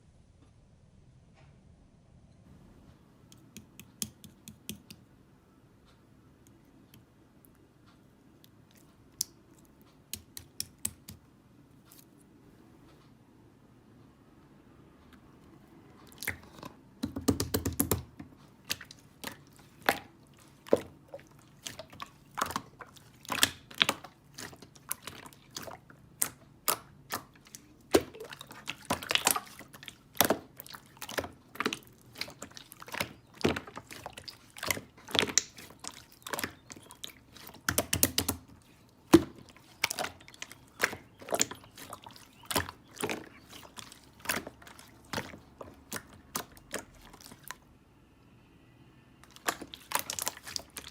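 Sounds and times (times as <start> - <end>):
chewing and wet mouth sounds: 6.4 - 12.3, 15.0 - 16.8, 18.3 - 47.7, 49.2 - 50.9.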